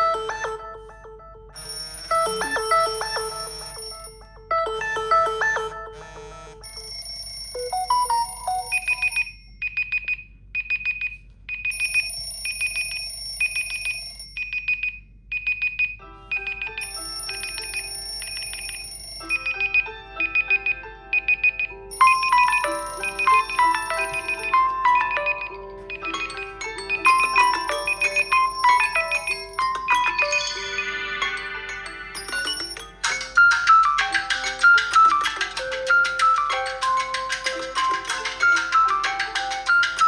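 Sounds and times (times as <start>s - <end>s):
high beep: 0.0s - 0.9s, 2.1s - 5.9s, 7.6s - 12.1s, 19.3s - 30.4s
lower electronic melody: 0.0s - 7.0s, 16.0s - 40.0s
chiming electronic melodies: 0.0s - 9.8s, 16.0s - 40.0s
electronic ringtone melody: 0.0s - 10.1s, 11.6s - 14.8s, 15.7s - 40.0s.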